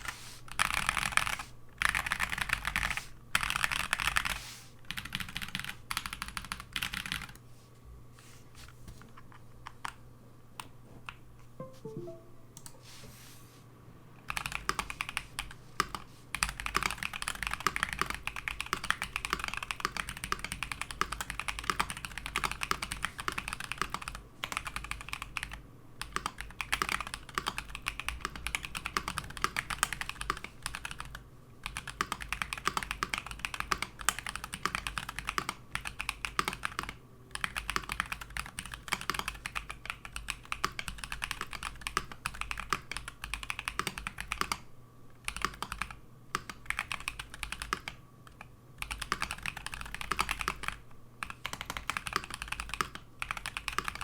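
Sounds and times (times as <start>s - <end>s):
mechanical keyboard typing: 0.5s - 7.4s, 14.3s - 54.0s.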